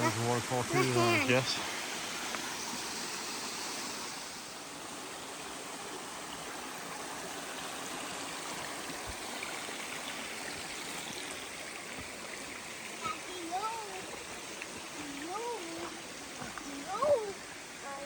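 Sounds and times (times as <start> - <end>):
water rushing over rocks: 0.0 - 18.0.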